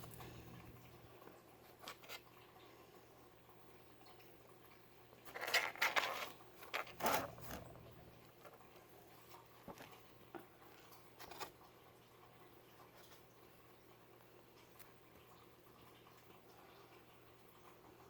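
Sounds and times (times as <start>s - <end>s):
cat scratching in a box: 5.3s - 7.6s.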